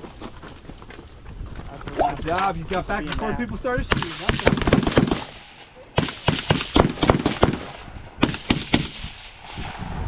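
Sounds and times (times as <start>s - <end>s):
overlapping gunshots: 3.8s - 9.8s.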